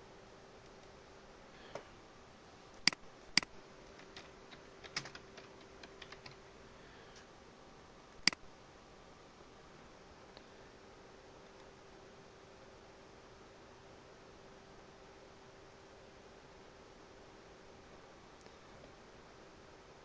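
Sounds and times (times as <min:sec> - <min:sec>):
faint steady hum: 0:00.0 - 0:20.0
keyboard keys clicking: 0:02.9 - 0:06.4.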